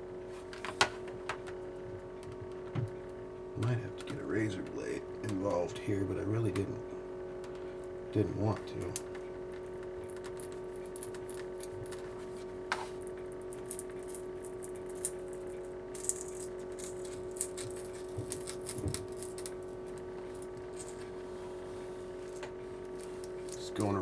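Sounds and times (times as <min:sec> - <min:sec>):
steady electric hum: 0:00.0 - 0:24.0
knife ticking and scraping on plastic: 0:13.0 - 0:21.1.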